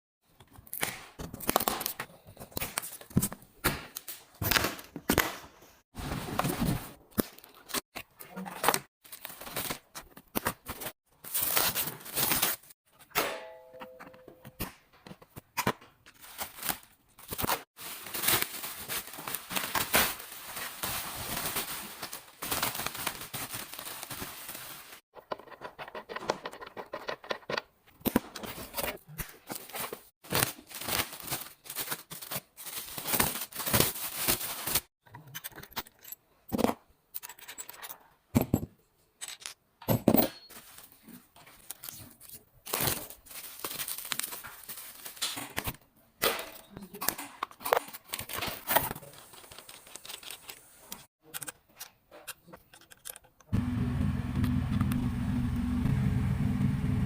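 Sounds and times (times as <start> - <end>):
packaging tearing and crinkling: 9.0 - 12.8, 16.2 - 25.0, 29.5 - 34.9, 41.6 - 45.5, 47.8 - 51.1.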